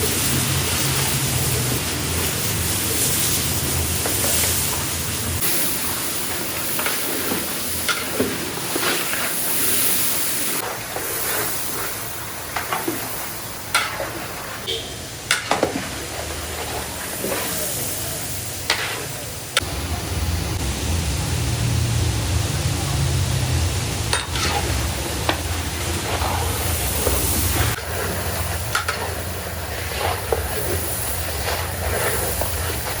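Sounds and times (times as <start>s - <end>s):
food sizzling in a pot: 0.0s - 33.0s
low steady rumble: 19.6s - 28.2s.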